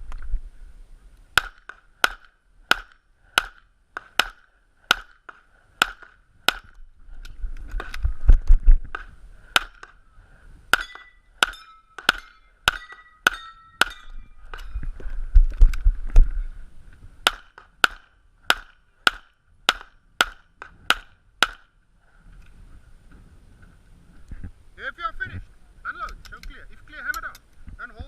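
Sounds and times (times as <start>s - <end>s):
low rumbling movement noise: 6.4s - 9.5s, 13.3s - 17.3s.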